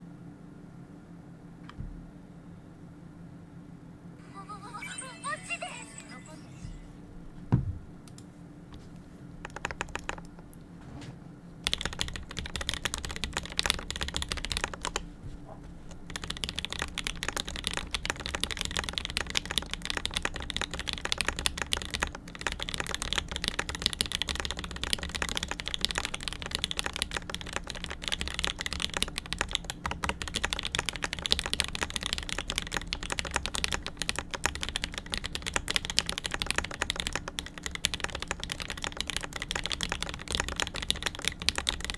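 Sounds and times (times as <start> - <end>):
mechanical keyboard typing: 9.4 - 10.6, 11.6 - 15.1, 15.9 - 41.9.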